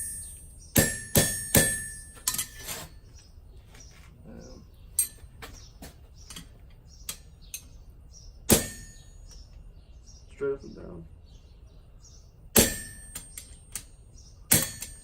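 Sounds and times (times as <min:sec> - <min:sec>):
hammer striking steel tongs: 0:00.0 - 0:02.6, 0:08.5 - 0:09.4, 0:12.6 - 0:13.9, 0:14.5 - 0:15.0
light metallic taps and clinks: 0:05.0 - 0:07.8.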